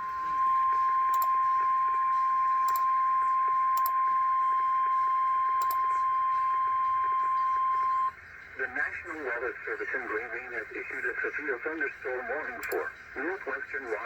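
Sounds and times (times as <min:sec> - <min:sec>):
steady warning alarm tone: 0:00.0 - 0:14.0
short clicks: 0:05.6 - 0:05.8, 0:12.6 - 0:12.8.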